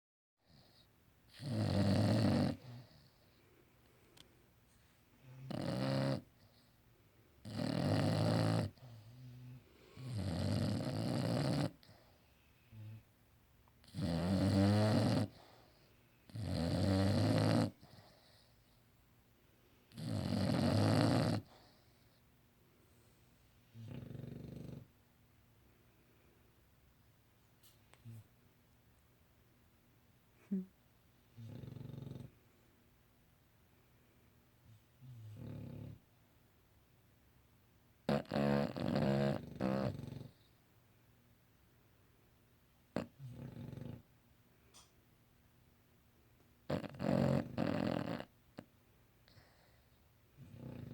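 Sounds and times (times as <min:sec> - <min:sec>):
dog snoring: 0:00.4 - 0:03.4, 0:05.2 - 0:06.7, 0:07.4 - 0:13.0, 0:13.8 - 0:18.8, 0:19.9 - 0:22.2, 0:23.7 - 0:24.9, 0:31.4 - 0:32.4, 0:35.0 - 0:36.0, 0:38.0 - 0:40.6, 0:42.9 - 0:44.1, 0:46.6 - 0:50.9
dog breathing softly: 0:49.2 - 0:50.9.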